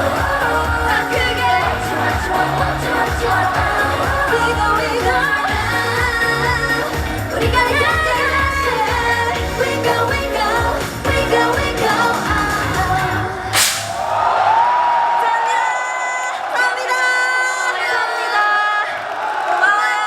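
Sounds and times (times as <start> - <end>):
pop song with female vocals: 0.0 - 13.9, 15.0 - 20.0.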